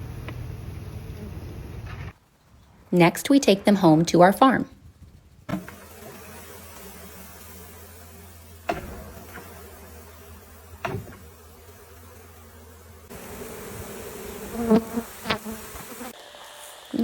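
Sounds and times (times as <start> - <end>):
bee swarm buzzing: 5.4 - 17.0
sharp knocks: 8.7 - 9.4, 10.8 - 11.2.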